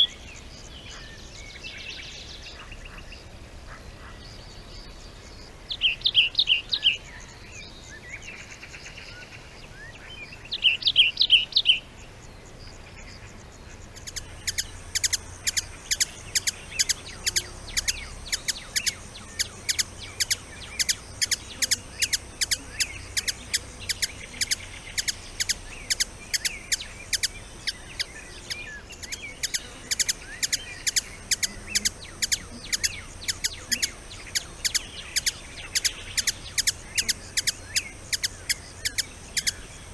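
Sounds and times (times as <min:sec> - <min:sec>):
sharp bird chirps: 0:14.0 - 0:39.9
bird trill: 0:14.1 - 0:39.9.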